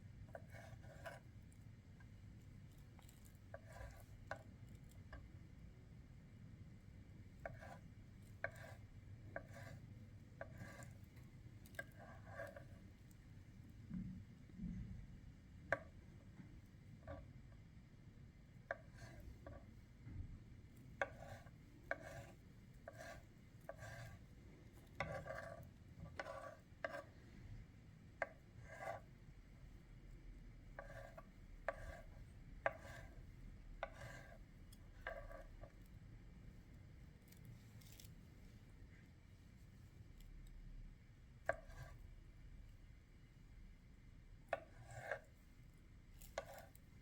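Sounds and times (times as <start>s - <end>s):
knife cutting on cutting board: 8.4s - 8.8s, 9.4s - 9.8s, 10.4s - 11.0s, 11.7s - 12.7s, 21.0s - 24.2s, 25.0s - 27.1s, 28.2s - 29.1s, 30.8s - 33.2s, 33.8s - 34.4s, 35.0s - 35.7s, 44.5s - 45.3s, 46.2s - 46.8s.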